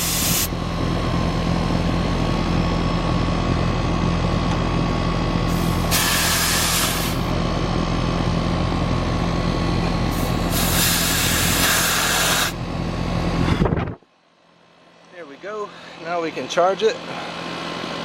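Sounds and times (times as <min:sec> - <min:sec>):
refrigerant hissing from hoses: 0:00.0 - 0:00.5, 0:05.5 - 0:07.3, 0:10.1 - 0:12.6
air conditioner unit humming: 0:00.0 - 0:18.0.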